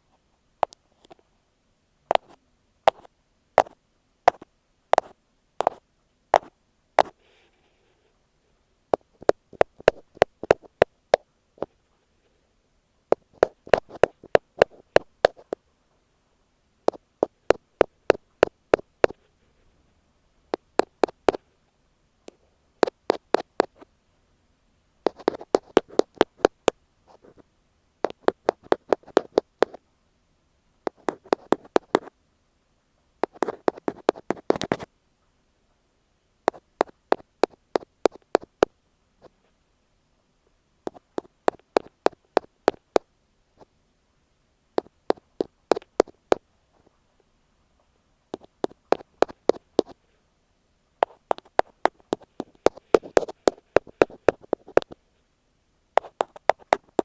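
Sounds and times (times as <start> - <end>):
ear pick tapping on microphone: 2.1 - 5.8, 9.0 - 11.7, 13.1 - 15.6, 25.1 - 26.8, 28.0 - 29.8, 36.5 - 38.7, 40.9 - 43.1, 44.8 - 46.4, 48.4 - 50.0, 51.0 - 55.0, 56.0 - 57.0.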